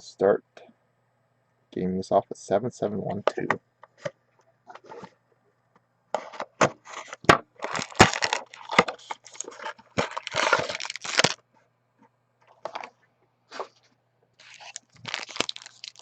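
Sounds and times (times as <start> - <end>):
wrapping crinkling and tearing: 7.6 - 11.4, 14.4 - 16.0.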